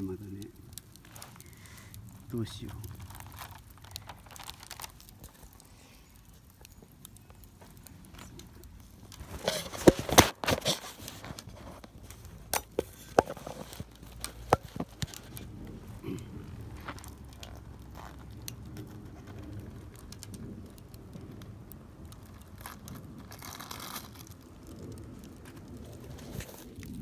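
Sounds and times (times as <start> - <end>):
campfire crackling and popping: 0.0 - 27.0
clattering handling noise: 9.2 - 15.4.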